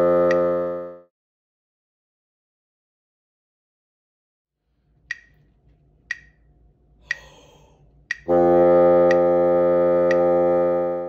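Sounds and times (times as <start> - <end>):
sharp clicks: 5.1 - 5.5, 6.1 - 6.5, 8.1 - 8.3
bassoon holding a low note: 8.3 - 11.0.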